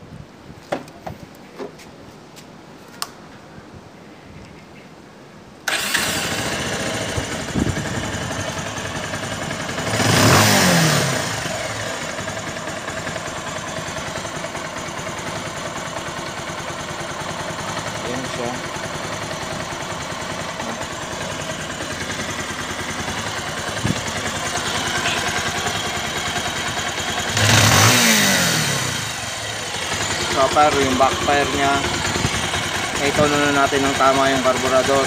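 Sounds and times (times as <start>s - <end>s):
motorcycle engine starting: 5.6s - 35.0s
engine revving: 5.7s - 12.4s, 24.6s - 35.0s.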